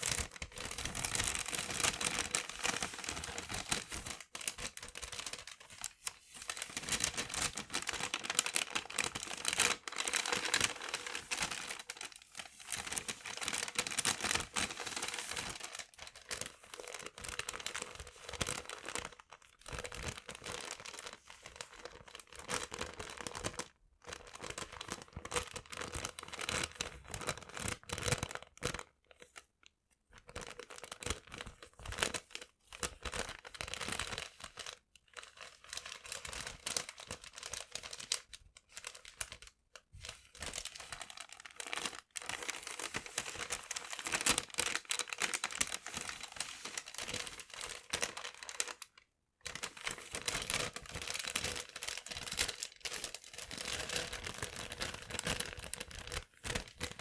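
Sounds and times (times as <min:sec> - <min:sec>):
paper crinkling and tearing: 0:00.0 - 0:19.0, 0:35.4 - 0:48.9.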